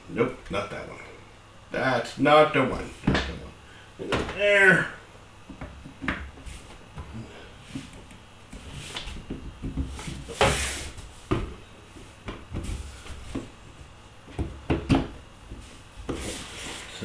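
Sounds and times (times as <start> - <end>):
rustling scrape: 10.0 - 11.1, 15.6 - 17.0.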